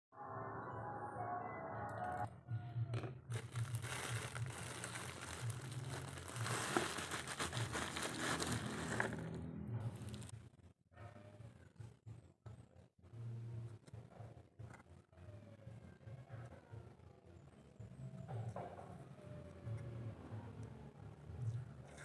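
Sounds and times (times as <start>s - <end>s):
papery skins crinkling: 3.3s - 9.4s, 10.0s - 10.3s.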